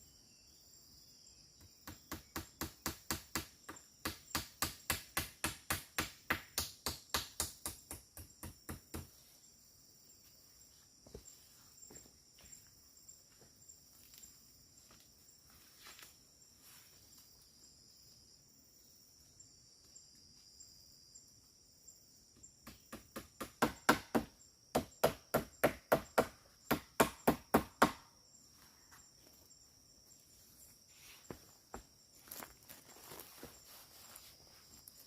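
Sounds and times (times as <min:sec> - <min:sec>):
insects chirring: 0:00.0 - 0:35.0
sharp wood strikes: 0:22.6 - 0:28.1.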